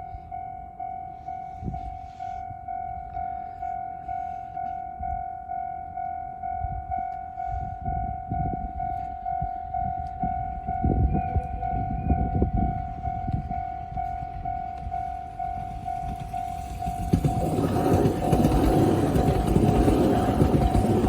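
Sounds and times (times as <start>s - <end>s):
train rumbling over crossing: 0.0s - 21.0s.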